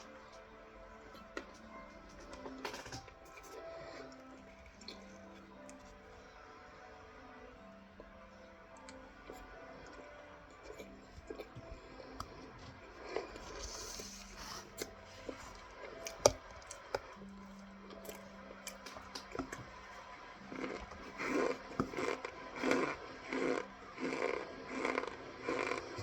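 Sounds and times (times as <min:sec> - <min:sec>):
crunching chews: 0:08.8 - 0:26.0.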